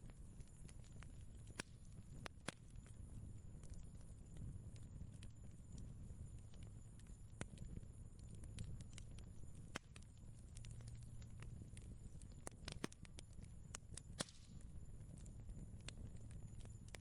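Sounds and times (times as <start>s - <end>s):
cooking fire crackling: 0.0s - 17.0s
low steady hum: 0.0s - 17.0s.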